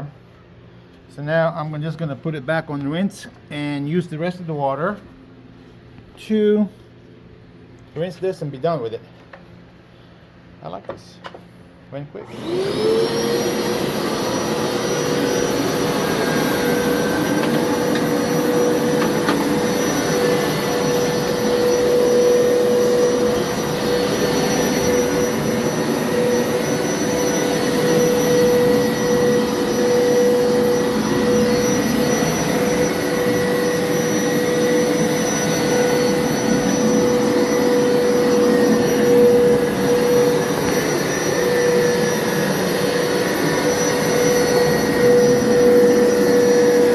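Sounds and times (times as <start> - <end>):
carpet washer motor whining: 12.2 - 46.9.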